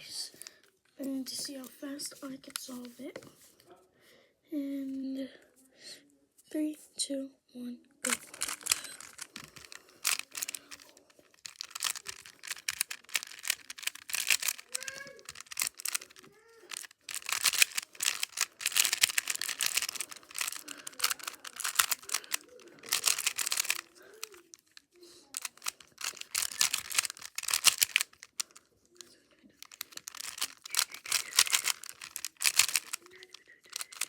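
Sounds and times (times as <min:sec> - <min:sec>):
puzzle cube layers clicking: 0:08.1 - 0:24.7, 0:25.4 - 0:28.6, 0:29.6 - 0:34.0.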